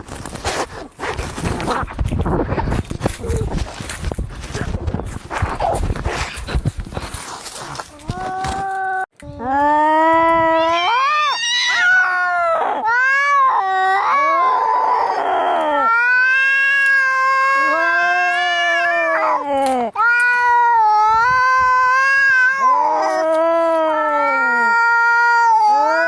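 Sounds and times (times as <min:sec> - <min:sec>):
cats yowling in a fight: 0:10.4 - 0:26.0.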